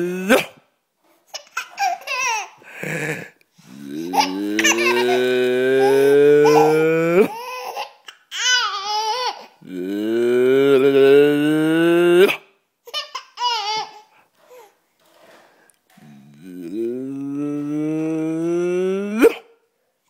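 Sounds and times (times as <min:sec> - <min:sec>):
man making drawn-out vocal noises: 0:00.0 - 0:00.6, 0:02.6 - 0:07.4, 0:09.6 - 0:12.4, 0:15.9 - 0:19.5
baby laughing: 0:01.3 - 0:03.3, 0:04.0 - 0:09.6, 0:12.9 - 0:14.7.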